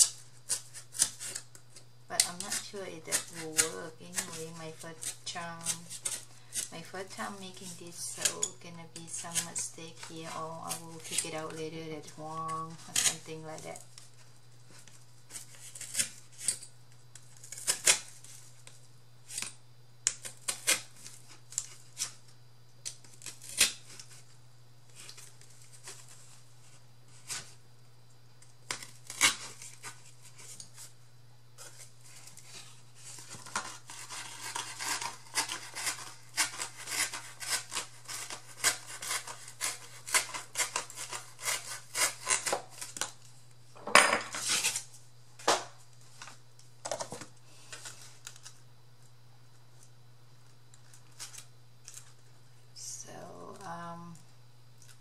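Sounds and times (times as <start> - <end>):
scissors snipping paper: 0.0 - 1.5, 2.2 - 13.8, 31.6 - 43.1
steady low hum: 0.0 - 55.0.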